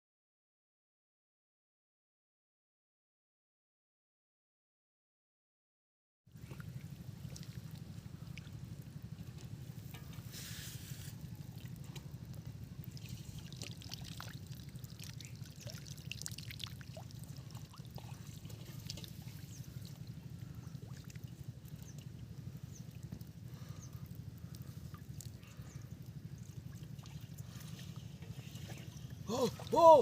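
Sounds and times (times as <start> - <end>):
water trickling and splashing: 6.3 - 23.8, 24.4 - 30.0
steady low rumble: 6.4 - 29.8.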